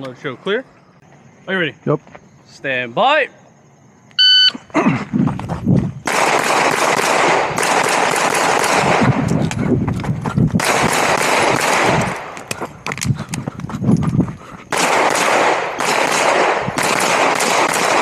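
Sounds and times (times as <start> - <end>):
rapid pistol fire: 6.1 - 9.3, 10.6 - 12.4, 14.7 - 18.0.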